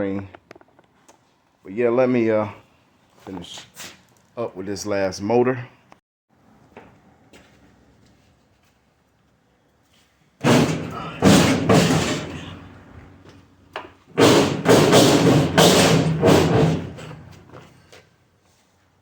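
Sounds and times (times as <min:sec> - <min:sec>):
metal banging and clattering: 0:10.4 - 0:13.1, 0:14.1 - 0:17.8.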